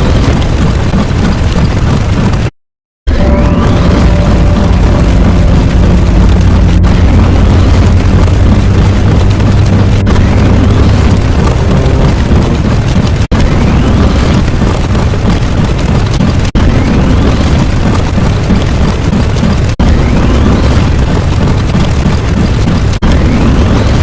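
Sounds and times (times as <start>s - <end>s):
layered sound effects: 3.1s - 21.7s
heavy explosion boom: 3.3s - 14.4s.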